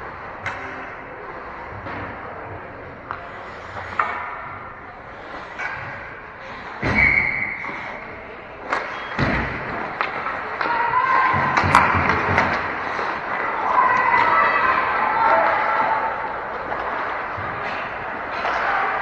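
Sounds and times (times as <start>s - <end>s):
din of ice rink: 0.0s - 19.0s
puck and sticks hitting boards: 0.2s - 8.0s, 8.6s - 19.0s
people shouting: 10.5s - 12.2s, 13.4s - 16.4s.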